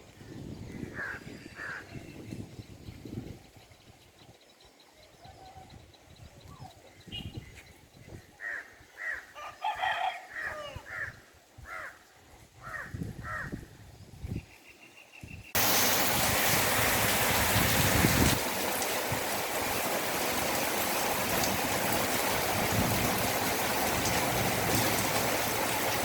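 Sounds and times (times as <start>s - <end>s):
rooster crowing: 9.4s - 11.0s
rushing water: 15.6s - 26.0s.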